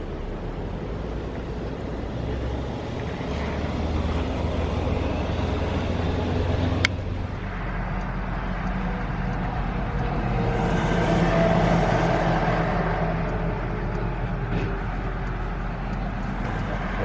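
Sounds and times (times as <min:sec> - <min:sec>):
car road and engine noise: 0:00.0 - 0:17.0.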